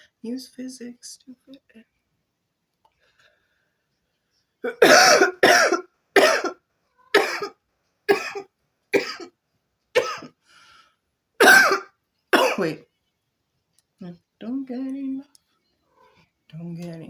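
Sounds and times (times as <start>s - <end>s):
woman coughing: 4.6s - 6.6s, 7.2s - 7.5s, 8.1s - 9.3s, 10.0s - 10.3s, 11.4s - 12.8s.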